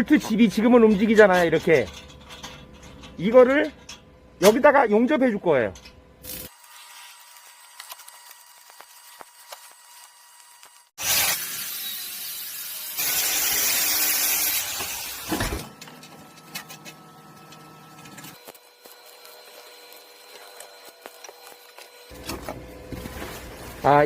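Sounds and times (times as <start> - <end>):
arc welding crackling and hissing: 6.2 - 16.9, 18.1 - 22.2, 23.4 - 24.0.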